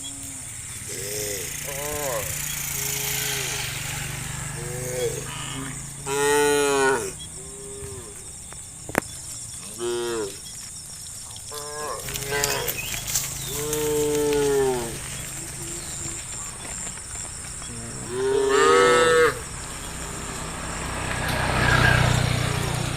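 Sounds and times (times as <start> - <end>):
cattle mooing: 0.0 - 8.2, 9.6 - 10.4, 11.5 - 16.4, 17.6 - 20.4.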